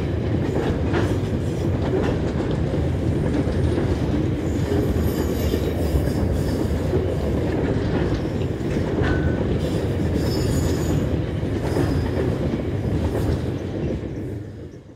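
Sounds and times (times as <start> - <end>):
train wheels rumbling on rails: 0.0 - 14.9
wheel squeal: 10.2 - 11.0.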